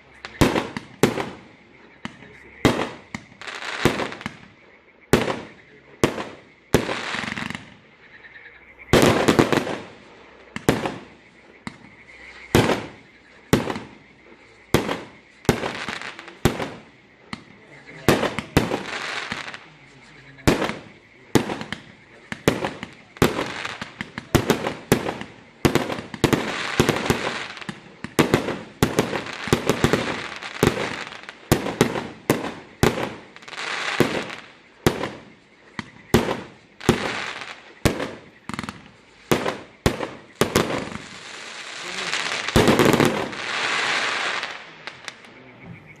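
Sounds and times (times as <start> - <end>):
firework bangs: 0.0 - 8.0, 8.9 - 45.8
firework crackling: 0.0 - 8.0, 8.9 - 45.4.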